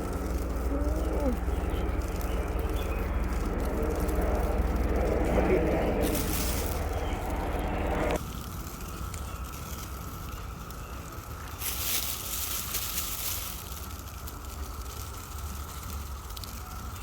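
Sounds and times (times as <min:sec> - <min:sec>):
rush of noise: 0:00.0 - 0:08.3
low rumble: 0:00.0 - 0:09.6
cicadas droning: 0:00.0 - 0:17.0.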